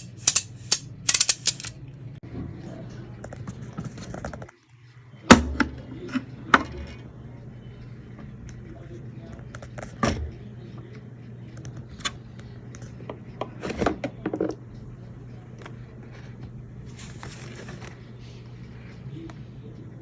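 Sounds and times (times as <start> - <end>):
scraping and rattling clicks: 0.0 - 1.7.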